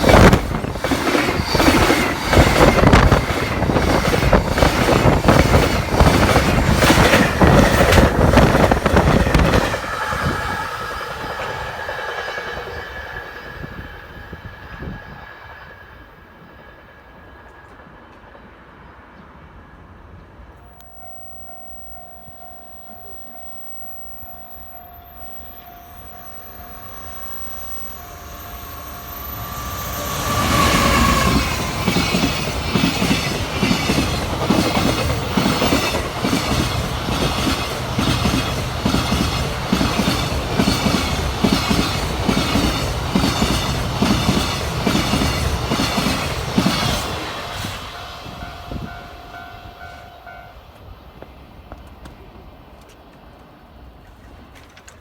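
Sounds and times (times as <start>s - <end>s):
freight train passing: 0.0s - 55.0s
level crossing warning bell: 20.6s - 34.0s, 46.8s - 50.7s.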